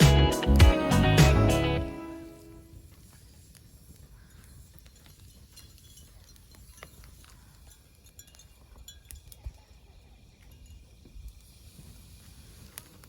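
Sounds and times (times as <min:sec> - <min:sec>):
light clicks and clinks: 0:03.9 - 0:11.4.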